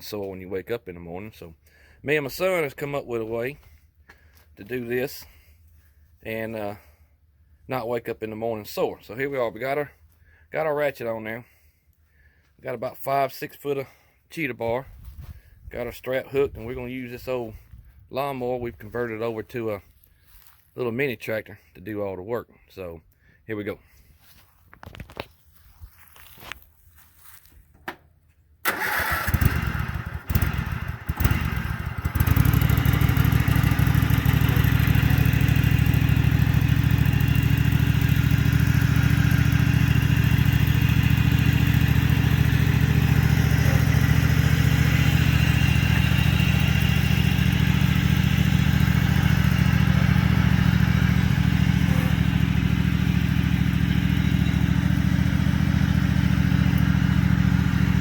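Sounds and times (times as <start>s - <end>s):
small engine running: 28.7s - 58.0s.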